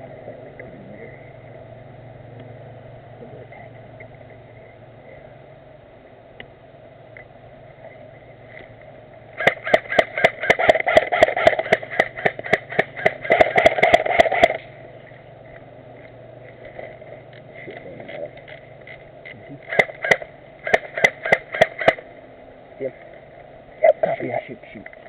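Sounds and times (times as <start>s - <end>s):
airsoft gun rapid firing: 9.4s - 14.6s, 19.7s - 22.0s.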